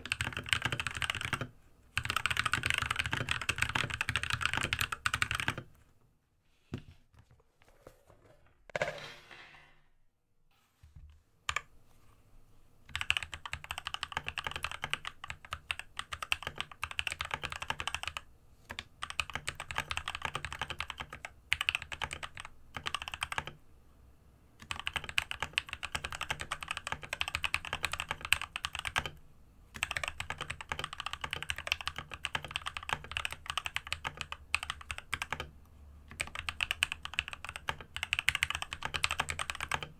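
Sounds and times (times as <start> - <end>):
fast typing on keyboard: 0.0 - 5.7, 12.9 - 23.6, 24.6 - 35.5, 36.1 - 39.9.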